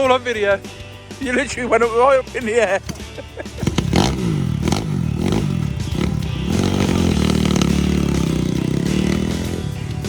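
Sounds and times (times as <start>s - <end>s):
motorbike engine revving: 2.8s - 10.0s.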